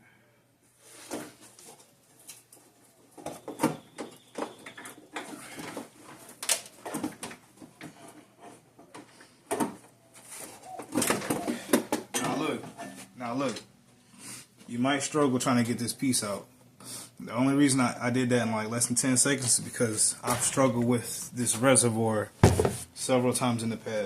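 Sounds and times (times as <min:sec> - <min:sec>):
plastic reservoir knocks and clunks: 0:22.4 - 0:22.8.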